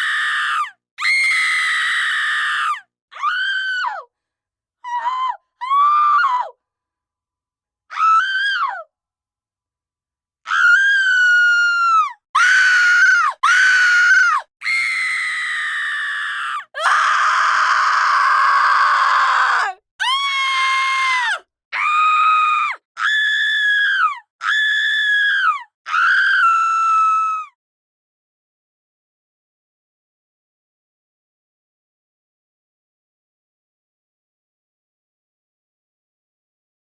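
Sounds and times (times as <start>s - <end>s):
women screaming: 12.4s - 22.5s.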